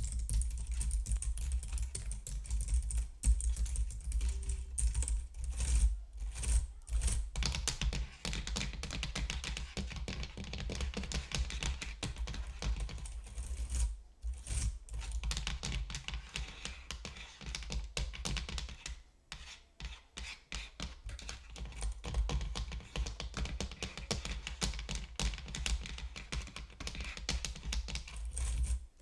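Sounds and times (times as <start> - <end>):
fast typing on computer keyboard: 0.0 - 5.8, 6.4 - 13.6, 21.1 - 28.7.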